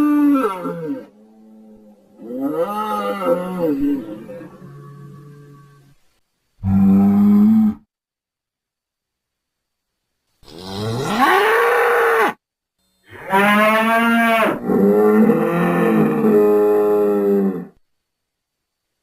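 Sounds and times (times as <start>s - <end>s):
bull mooing: 13.1s - 17.8s.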